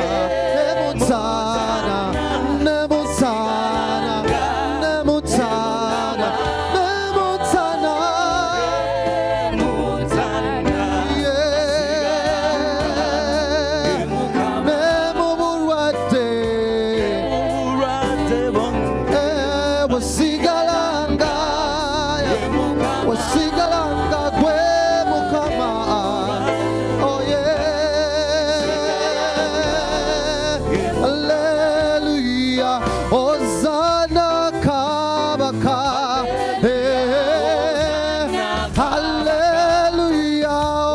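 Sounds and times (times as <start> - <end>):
voices singing with vibrato: 0.0 - 34.0, 34.7 - 40.9
instrumental backing: 0.0 - 40.9.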